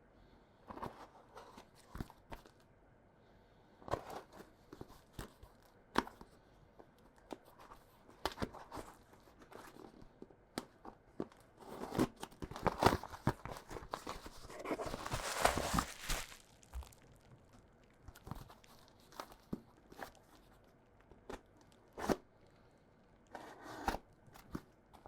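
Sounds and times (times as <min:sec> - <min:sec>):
wrapping rustling and tearing: 0:12.4 - 0:20.6.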